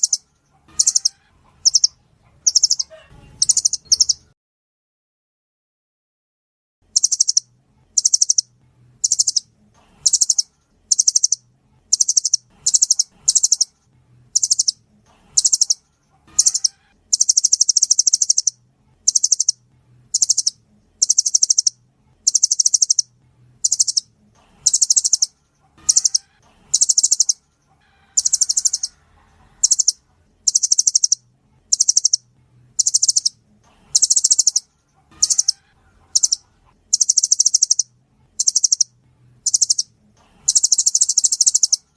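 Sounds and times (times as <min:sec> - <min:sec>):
nuthatch trilling calls: 0:00.0 - 0:04.3, 0:07.0 - 0:07.4, 0:08.0 - 0:09.4, 0:10.0 - 0:13.7, 0:14.4 - 0:14.8, 0:15.4 - 0:24.0, 0:24.6 - 0:27.4, 0:28.1 - 0:29.0, 0:29.6 - 0:32.2, 0:32.8 - 0:41.9.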